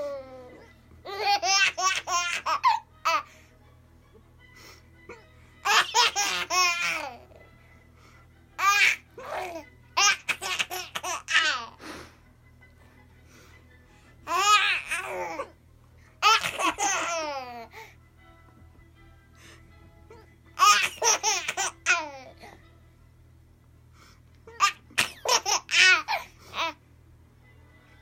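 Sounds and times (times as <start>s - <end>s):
baby laughing: 0.0s - 3.3s, 5.6s - 7.4s, 8.6s - 11.8s, 14.3s - 15.6s, 16.2s - 17.7s, 20.1s - 22.6s, 24.5s - 26.8s.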